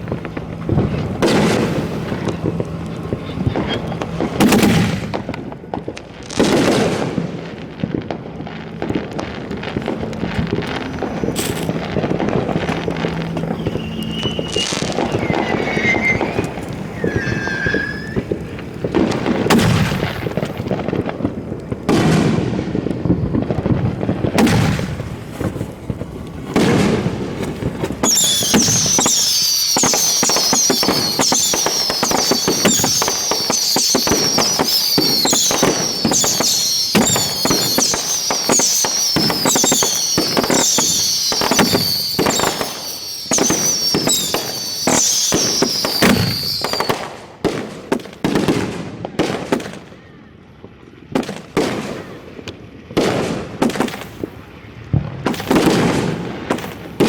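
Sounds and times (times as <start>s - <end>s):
fireworks shrill whistles: 0.0s - 7.0s, 8.7s - 20.7s, 26.6s - 47.1s
fireworks bangs and cracks: 0.0s - 57.0s.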